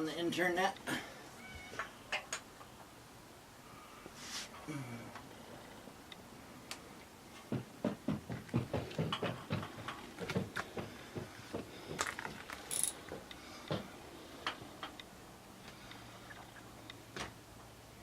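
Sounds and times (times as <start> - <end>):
brief hiss: 4.2 - 4.6
metal tools clicking and knocking: 12.0 - 13.2.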